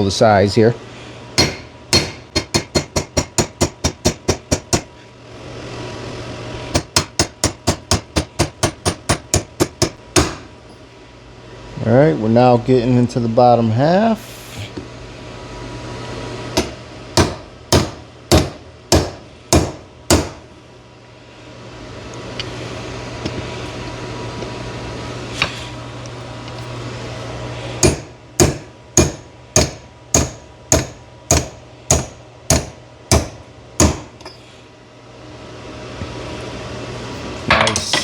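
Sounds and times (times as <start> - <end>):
steady low hum: 0.0 - 38.0
hammer striking steel pin: 1.4 - 4.9, 6.7 - 10.5, 16.6 - 20.4, 27.8 - 34.4.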